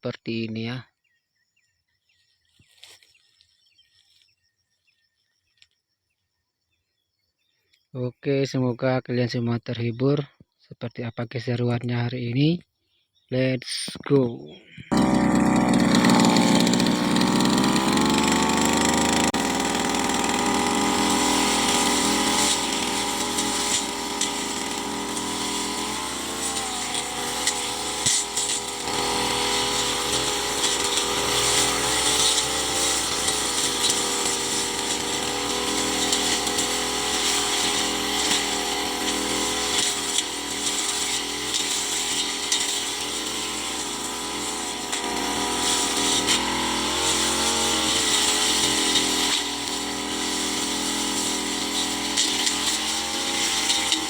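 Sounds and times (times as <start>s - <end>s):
brush cutter engine running: 14.3s - 54.0s.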